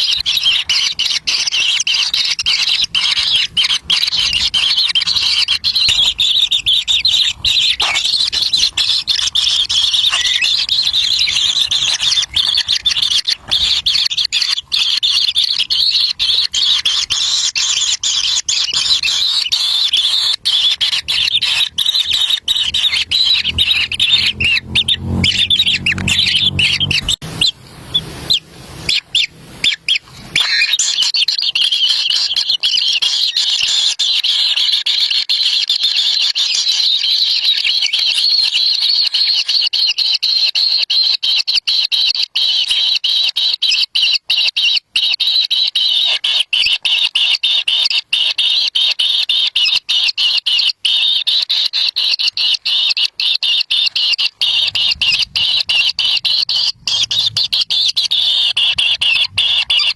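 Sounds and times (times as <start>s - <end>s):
chicks high-pitched begging calls: 0.0s - 59.9s
low rumble: 21.3s - 28.8s, 54.6s - 59.7s.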